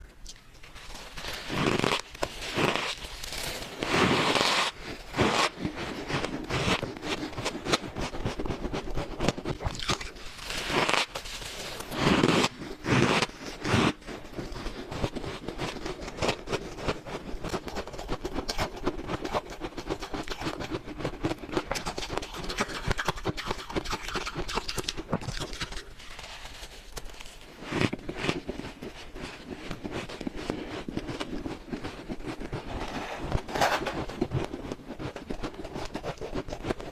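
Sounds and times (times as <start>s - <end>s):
chewing crunchy ice: 9.5s - 11.1s, 11.8s - 25.9s.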